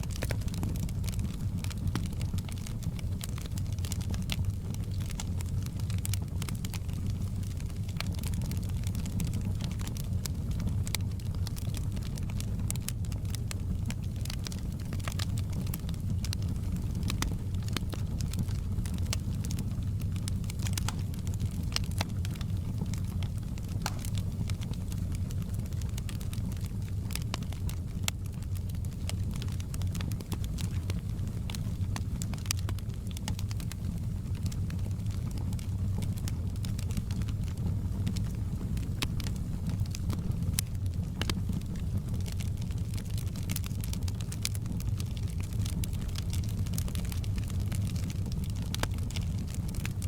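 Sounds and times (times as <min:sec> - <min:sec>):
fire crackling and popping: 0:00.0 - 0:50.0
fire flames roaring: 0:00.0 - 0:50.0
pops and snaps: 0:20.6 - 0:21.1, 0:23.6 - 0:24.3.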